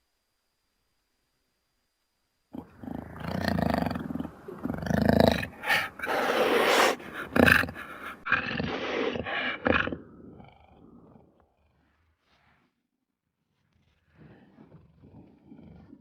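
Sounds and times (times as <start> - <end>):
jaguar growling calls: 2.6 - 11.9.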